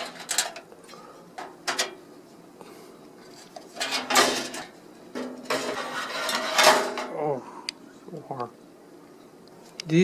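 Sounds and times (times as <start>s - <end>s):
metal case parts clicking and clattering: 0.0s - 0.7s.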